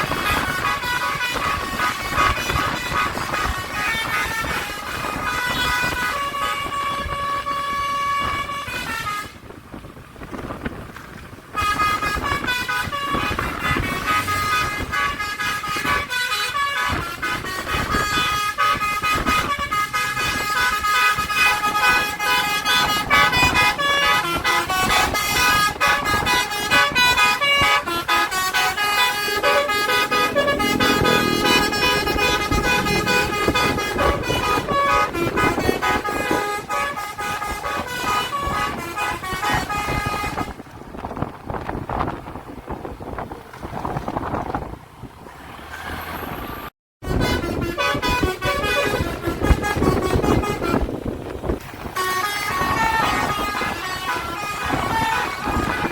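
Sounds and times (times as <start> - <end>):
multi-tone air horn melody: 0.0 - 9.5, 11.5 - 40.6, 47.0 - 55.9.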